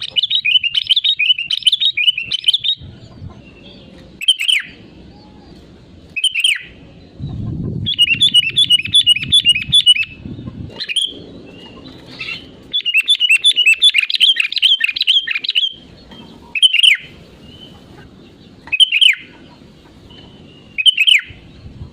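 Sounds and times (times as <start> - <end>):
fast repeated bird chirping: 0.0 - 3.2, 4.2 - 4.8, 6.2 - 19.6, 20.2 - 21.5
bird singing bubbly phrases: 7.8 - 15.8, 20.6 - 21.7.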